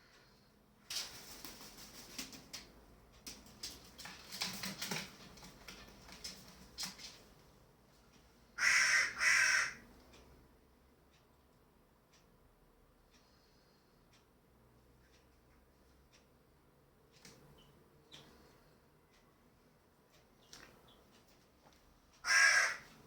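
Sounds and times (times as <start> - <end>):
light clicks and scratches: 0.9 - 8.2
harsh bird calls: 8.6 - 9.8, 22.2 - 23.0.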